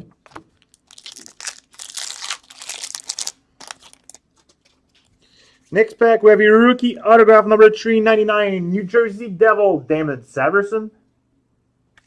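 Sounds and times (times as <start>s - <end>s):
card pack wrapper crinkling: 0.3s - 5.1s.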